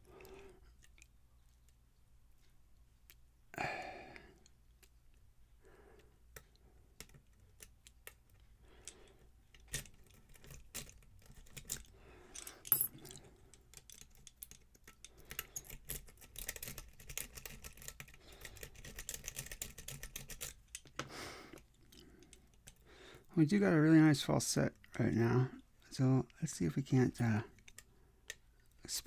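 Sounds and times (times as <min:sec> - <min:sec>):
lock pick clicks and scrapes: 0:07.0 - 0:21.0.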